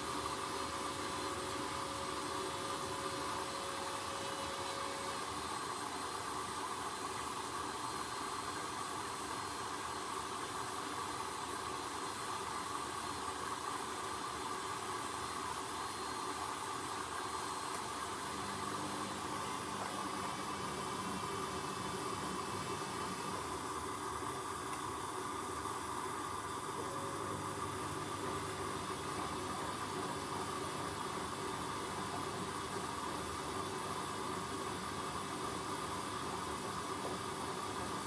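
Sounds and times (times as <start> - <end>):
washing machine hissing: 0.0 - 38.0.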